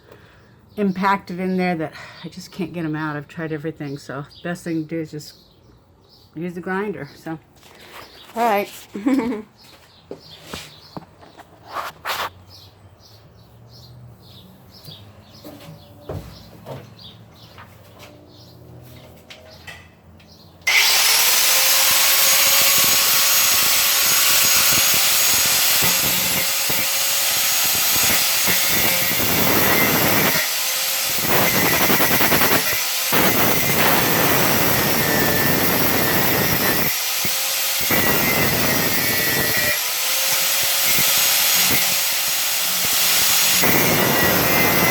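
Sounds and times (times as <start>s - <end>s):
angle grinder grinding metal: 20.7s - 44.9s.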